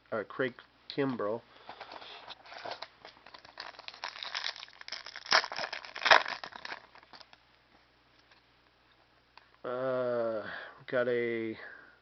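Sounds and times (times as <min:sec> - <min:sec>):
foil pack tearing and crinkling: 0:02.4 - 0:07.3.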